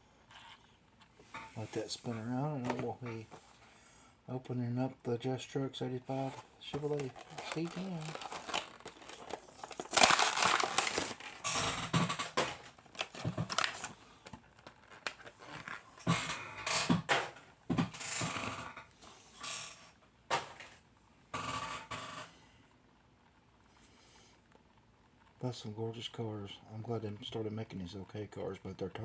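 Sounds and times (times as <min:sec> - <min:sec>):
packaging crinkling and tearing: 0:06.1 - 0:16.4.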